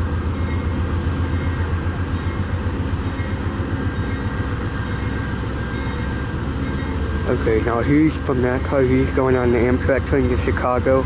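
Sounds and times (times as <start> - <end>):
diesel locomotive idling: 0.0 - 11.0.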